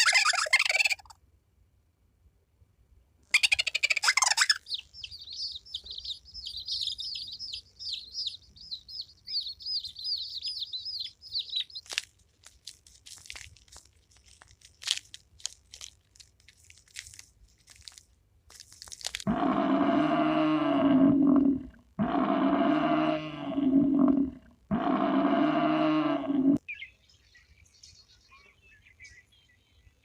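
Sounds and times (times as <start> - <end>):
faint crackling clicks: 11.7 - 19.3
large animal low call: 19.3 - 26.6.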